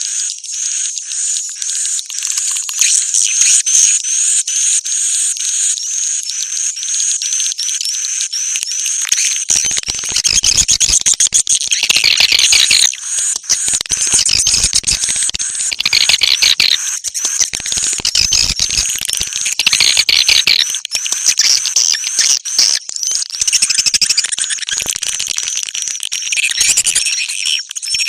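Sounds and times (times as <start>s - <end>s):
birds chirping and clicking: 0.0s - 28.0s.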